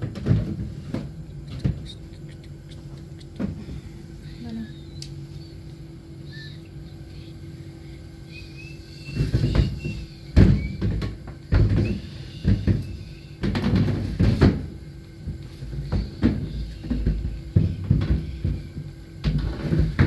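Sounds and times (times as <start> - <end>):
steady low hum: 0.0 - 20.0
loud knocks and thuds: 10.4 - 14.8.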